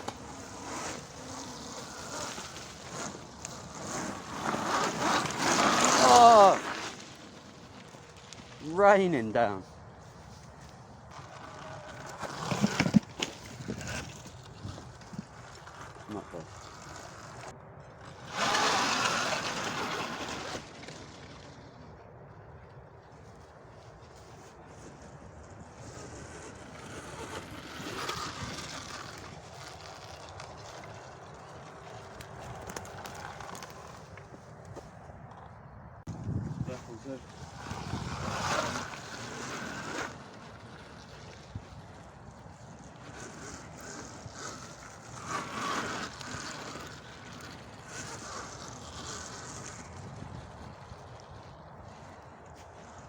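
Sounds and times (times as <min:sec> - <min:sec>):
tyre and drivetrain noise: 0:00.0 - 0:53.0
wind rushing over microphone: 0:35.6 - 0:45.3, 0:48.0 - 0:53.0.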